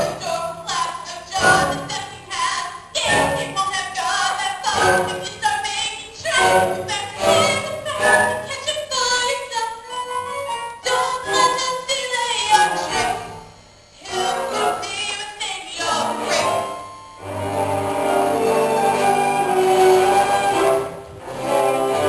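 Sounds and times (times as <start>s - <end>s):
instrumental accompaniment: 0.0s - 2.3s, 6.3s - 8.7s, 15.8s - 22.0s
cast voices singing: 0.0s - 22.0s.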